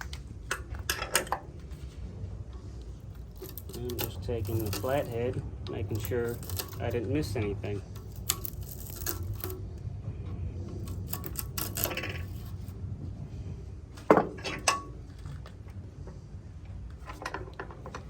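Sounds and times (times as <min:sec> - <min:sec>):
screwdriver clinking on metal: 0:03.1 - 0:09.6, 0:10.8 - 0:12.6.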